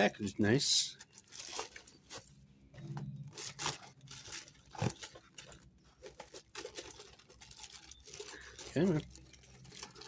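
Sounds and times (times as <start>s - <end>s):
plastic bag rustling: 0.8s - 10.0s
cardboard box crinkling: 1.0s - 2.3s, 3.2s - 10.0s.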